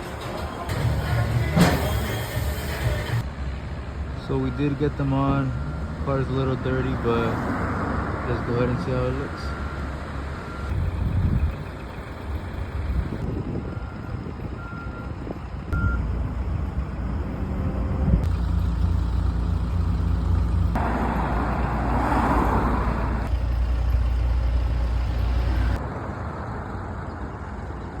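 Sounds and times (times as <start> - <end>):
short beeps: 15.7 - 16.1.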